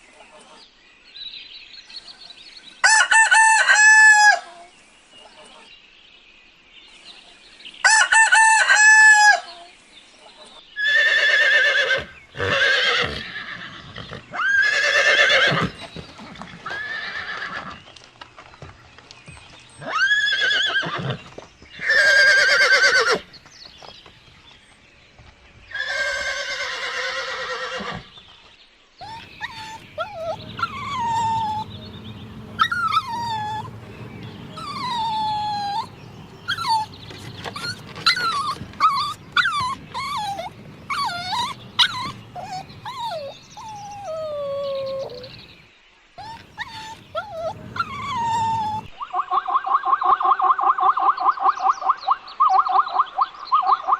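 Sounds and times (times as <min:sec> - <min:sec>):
animal cries: 0:10.8 - 0:15.8, 0:29.0 - 0:45.6, 0:46.2 - 0:48.9
chorus of short falling cries: 0:29.0 - 0:45.4.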